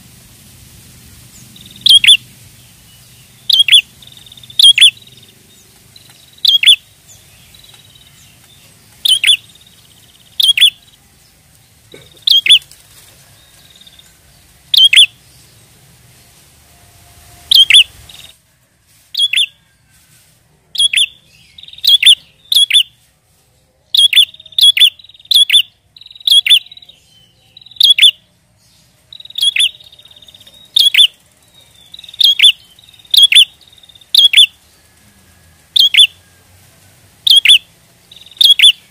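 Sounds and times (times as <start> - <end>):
bird buzzy trill: 1.3 - 11.0, 11.8 - 15.6, 16.9 - 18.4, 19.2 - 19.6, 20.7 - 23.0, 23.9 - 28.3, 28.9 - 34.7, 35.6 - 36.3, 37.2 - 38.9
bird sharp chirps: 1.4 - 10.9, 12.0 - 12.7, 14.7 - 15.2, 17.5 - 18.4, 19.1 - 19.6, 20.8 - 23.0, 23.9 - 28.2, 29.1 - 35.0, 35.7 - 36.2, 37.2 - 38.9.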